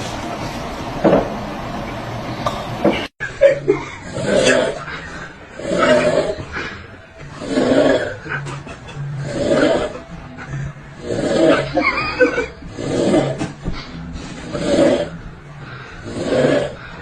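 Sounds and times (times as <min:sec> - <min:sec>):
person snoring loudly: 0:03.7 - 0:17.0.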